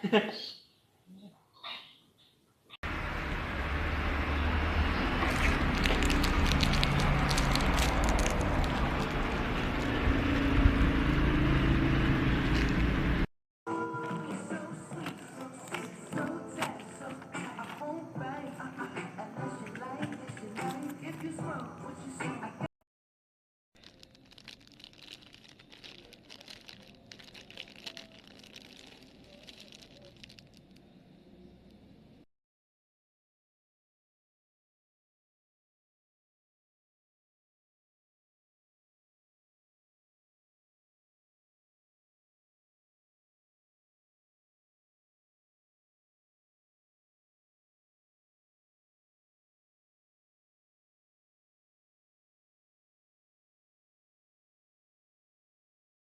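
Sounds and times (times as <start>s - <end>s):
low vehicle rumble: 2.9s - 13.3s.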